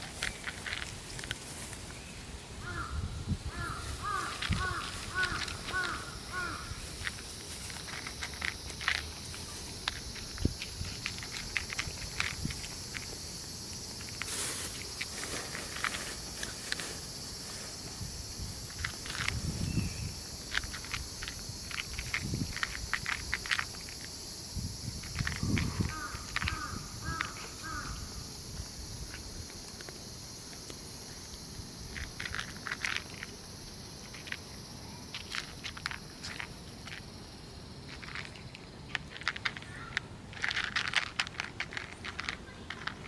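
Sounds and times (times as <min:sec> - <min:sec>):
small clicks and rustles: 0:00.0 - 0:02.0, 0:06.9 - 0:17.9, 0:18.6 - 0:19.6, 0:20.3 - 0:24.1, 0:31.9 - 0:33.4, 0:34.0 - 0:37.1, 0:37.9 - 0:43.0
high-pitched hiss: 0:00.0 - 0:43.0.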